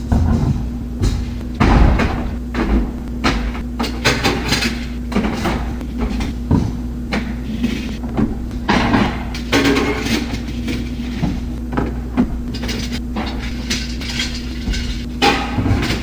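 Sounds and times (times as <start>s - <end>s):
hard objects clanking and knocking: 0.0s - 16.0s
low mechanical hum: 0.0s - 16.0s.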